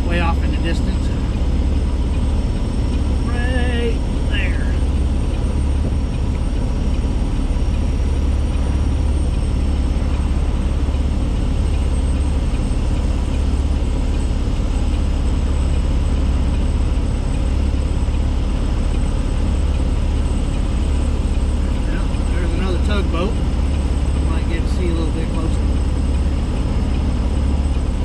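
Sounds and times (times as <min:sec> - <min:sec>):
truck diesel engine droning: 0:00.0 - 0:28.0.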